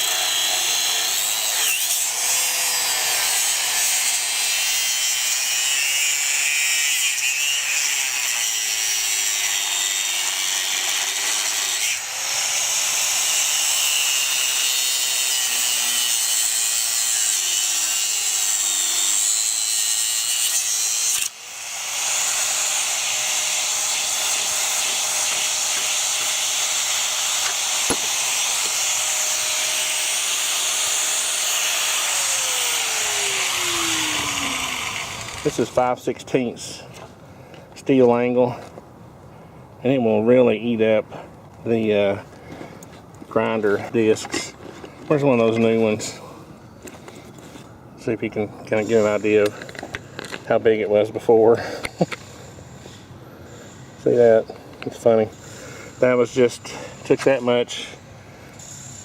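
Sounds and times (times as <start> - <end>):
angle grinder cutting steel: 0.0 - 35.9, 58.6 - 59.0.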